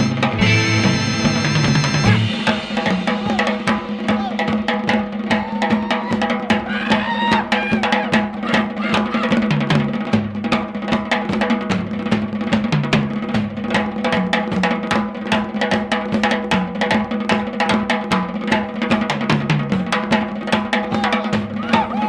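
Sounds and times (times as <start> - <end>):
bass line: 0.0 - 2.5
sustained chords: 0.0 - 2.5
drum kit beat: 0.0 - 22.0.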